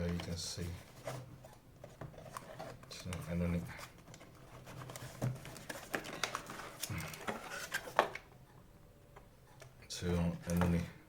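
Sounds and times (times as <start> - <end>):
packaging clicks and rustles: 1.9 - 8.3.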